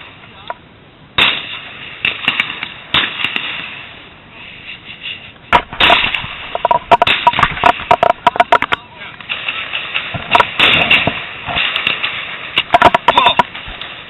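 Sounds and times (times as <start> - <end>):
shotgun bangs with echoes: 1.2 - 3.6
small clicks: 6.5 - 9.4.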